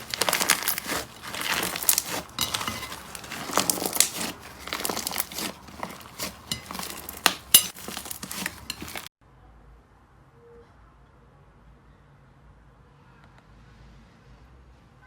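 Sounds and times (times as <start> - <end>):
slime crackling and popping: 0.0 - 9.1.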